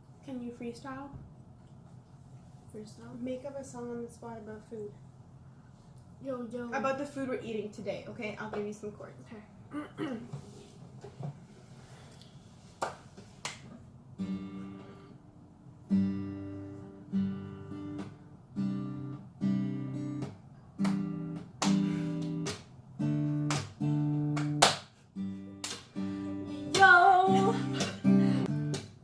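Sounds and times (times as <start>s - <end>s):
acoustic guitar strumming chords: 14.2s - 15.2s, 15.8s - 24.6s, 25.2s - 29.0s.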